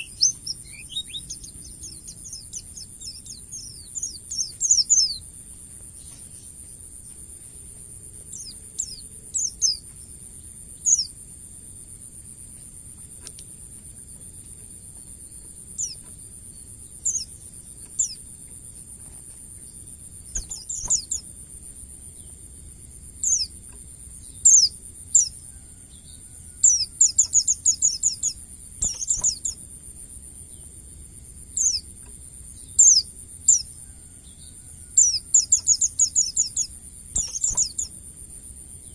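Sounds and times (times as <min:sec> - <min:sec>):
bird chirping: 0:00.0 - 0:06.9, 0:08.2 - 0:10.2, 0:10.8 - 0:11.2, 0:14.9 - 0:18.3, 0:19.6 - 0:21.3, 0:23.2 - 0:25.6, 0:26.6 - 0:29.7, 0:31.6 - 0:33.9, 0:35.0 - 0:38.0.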